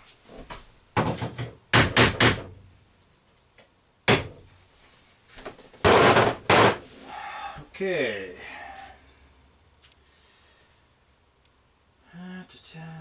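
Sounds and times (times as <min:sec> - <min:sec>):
knocks and thumps on wood: 0:01.0 - 0:02.6, 0:04.1 - 0:04.5, 0:05.4 - 0:06.9.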